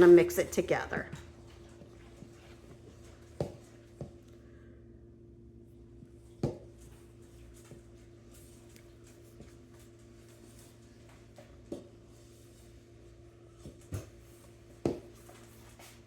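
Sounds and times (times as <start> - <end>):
faint steady hum: 0.0 - 16.0
dough stirring scrape: 0.5 - 4.2.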